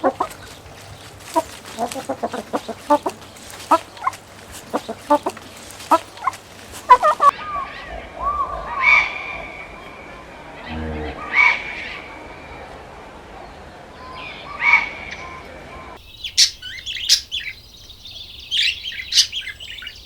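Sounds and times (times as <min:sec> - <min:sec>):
chickens clucking: 0:00.0 - 0:08.0.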